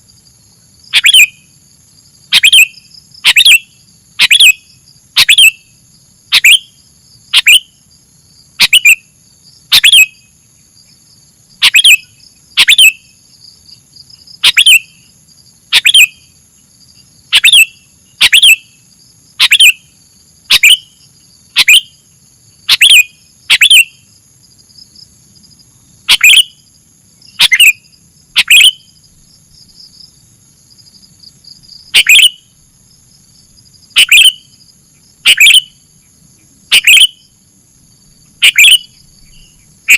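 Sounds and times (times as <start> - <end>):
bird calling: 0.9 - 1.4, 2.3 - 4.6, 5.2 - 5.6, 6.3 - 6.7, 7.3 - 7.7, 8.6 - 9.0, 9.7 - 10.2, 11.6 - 13.1, 14.4 - 15.1, 15.7 - 16.3, 17.3 - 18.8, 19.4 - 19.9, 20.5 - 22.0, 22.7 - 24.0, 26.1 - 26.6, 27.3 - 28.9, 31.9 - 32.5, 33.9 - 34.5, 35.2 - 35.7, 36.4 - 37.3, 38.4 - 39.9.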